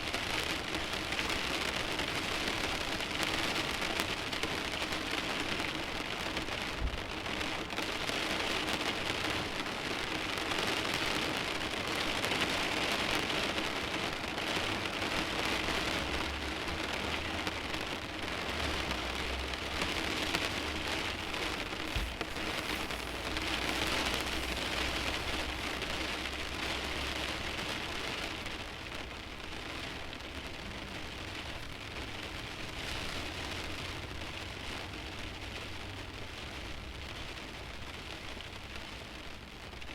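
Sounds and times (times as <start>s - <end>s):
rain on car windshield: 0.0s - 39.9s.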